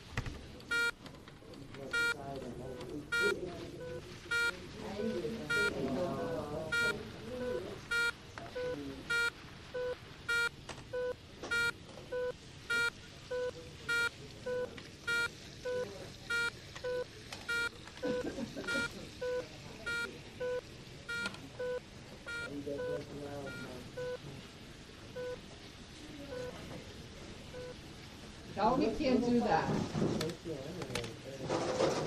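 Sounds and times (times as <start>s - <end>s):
alternating high and low alarm beeps: 3.1s - 24.2s, 27.6s - 27.8s.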